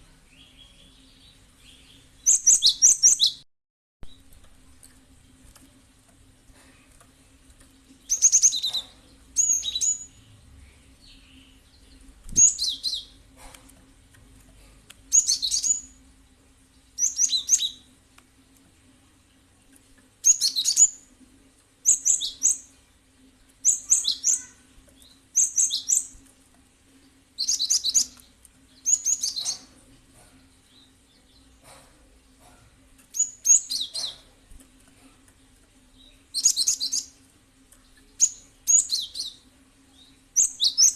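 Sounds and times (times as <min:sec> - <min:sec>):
bird singing high chirps: 0:00.3 - 0:03.4, 0:08.0 - 0:13.2, 0:15.1 - 0:16.0, 0:17.0 - 0:17.9, 0:20.2 - 0:21.0, 0:21.8 - 0:22.7, 0:23.6 - 0:26.2, 0:27.4 - 0:28.2, 0:28.8 - 0:29.7, 0:33.2 - 0:34.3, 0:36.0 - 0:37.2, 0:38.0 - 0:40.9
faint steady hum: 0:04.0 - 0:40.9.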